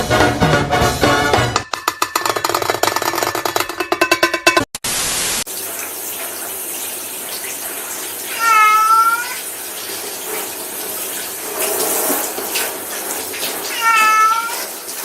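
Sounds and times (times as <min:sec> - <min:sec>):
drum kit playing: 0:00.0 - 0:04.8
water running from a tap: 0:05.2 - 0:15.0.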